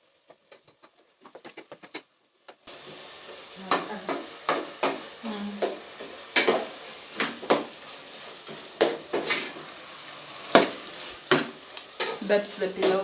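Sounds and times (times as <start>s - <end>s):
food sizzling in a pot: 0.0s - 13.0s
spoon scraping and knocking pot: 8.5s - 9.6s, 10.5s - 13.0s.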